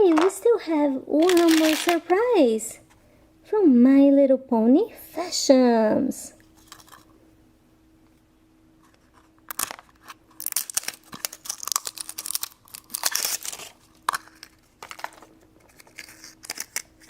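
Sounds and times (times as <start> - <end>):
packet being torn and crinkled: 1.2 - 2.1, 9.5 - 17.0.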